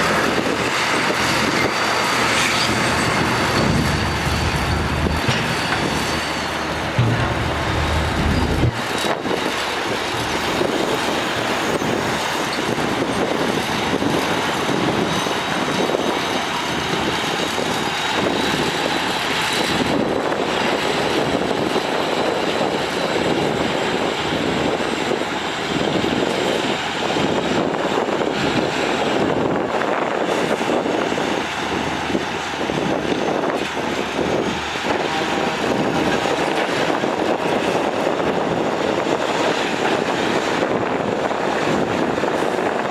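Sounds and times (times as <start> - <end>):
diesel earthmoving machinery running: 0.0 - 42.9
deep low rumble: 2.8 - 9.2.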